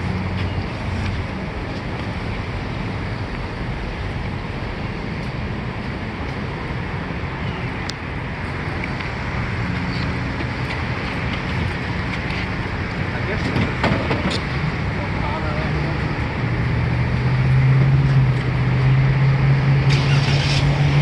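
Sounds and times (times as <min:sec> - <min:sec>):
vehicle road noise: 0:00.0 - 0:21.0.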